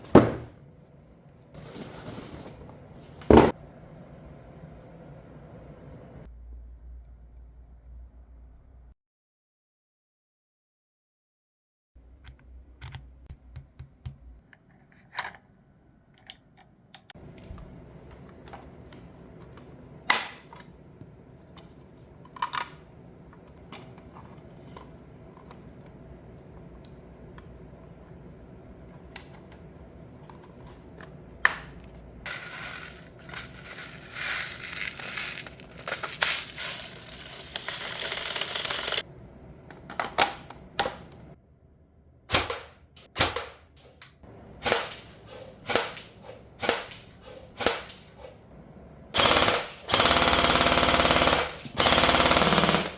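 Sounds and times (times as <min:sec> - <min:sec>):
rustling and scraping: 0:00.0 - 0:03.4, 0:31.8 - 0:39.0
rifle parts clicking and snapping: 0:32.3 - 0:39.0.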